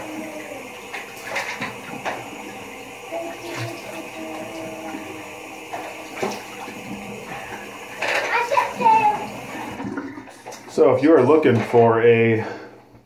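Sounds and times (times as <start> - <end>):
voices: 0.0 - 9.8
running water rushing: 0.0 - 12.2.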